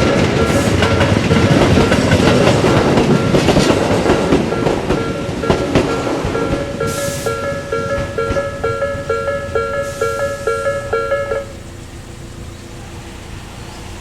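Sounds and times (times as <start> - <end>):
level crossing warning bells ringing: 0.0 - 12.4.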